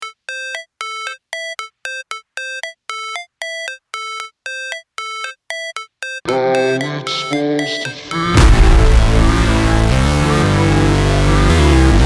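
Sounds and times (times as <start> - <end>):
electronic ringtone beeping: 0.0 - 8.8.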